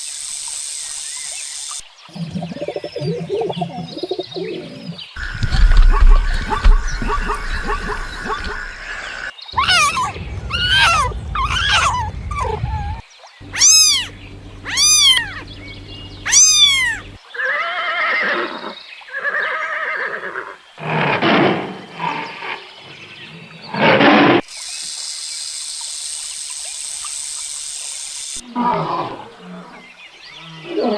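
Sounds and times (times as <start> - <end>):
harsh roaring calls: 5.2 - 17.2
animal calls: 5.2 - 18.5
high arching animal cries: 5.2 - 20.5.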